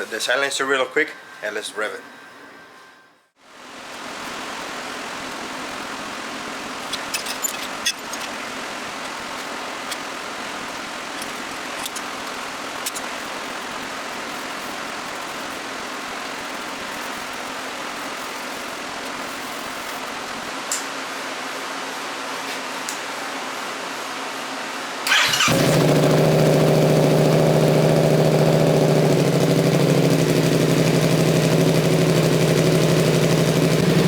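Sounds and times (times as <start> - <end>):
motorcycle engine idling: 25.1 - 34.0.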